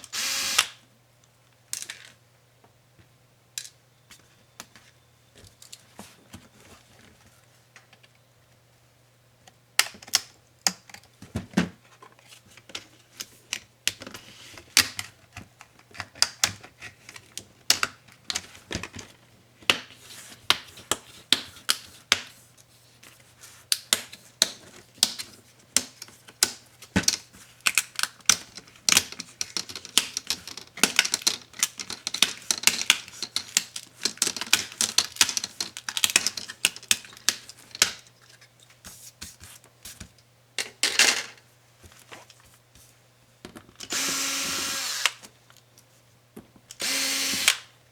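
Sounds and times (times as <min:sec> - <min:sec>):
laptop parts clicking and tapping: 0:23.8 - 0:38.0.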